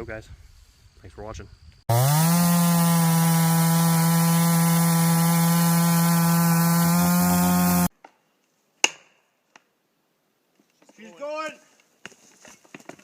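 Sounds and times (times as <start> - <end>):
chainsaw engine revving: 1.9 - 7.9.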